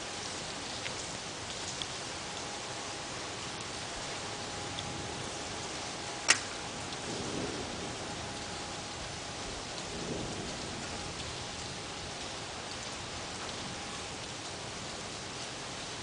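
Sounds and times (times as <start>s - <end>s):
steady rain falling: 0.0s - 16.0s
faint thunder rumble: 3.9s - 15.0s.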